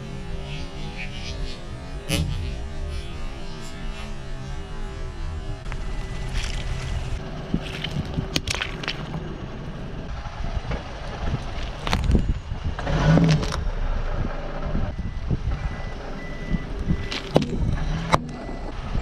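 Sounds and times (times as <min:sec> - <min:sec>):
car running slowly: 0:00.0 - 0:19.0
objects crushed under tyres: 0:05.7 - 0:09.3.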